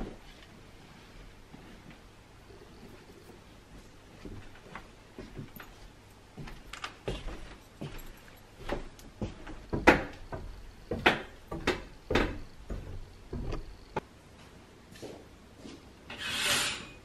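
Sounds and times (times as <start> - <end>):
household knocks and clicks: 6.4 - 14.0.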